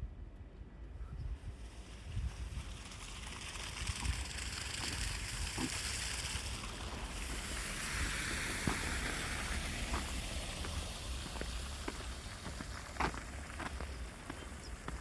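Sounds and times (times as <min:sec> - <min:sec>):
tyre hiss on wet road: 0:01.5 - 0:15.0
light footsteps: 0:06.9 - 0:15.0.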